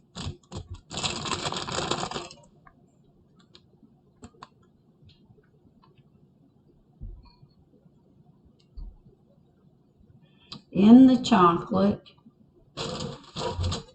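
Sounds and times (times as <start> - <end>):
dense scratchy noise: 12.8 - 13.9.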